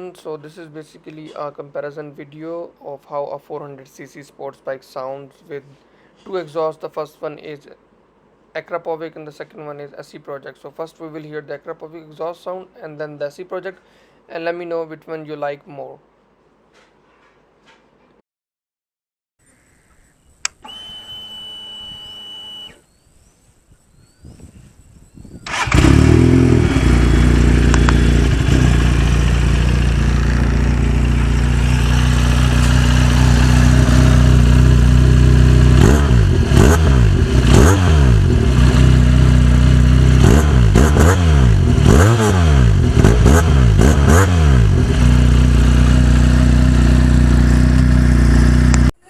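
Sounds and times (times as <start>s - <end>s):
motorcycle engine revving: 25.4s - 48.9s
motorcycle engine starting and idling: 25.4s - 48.9s.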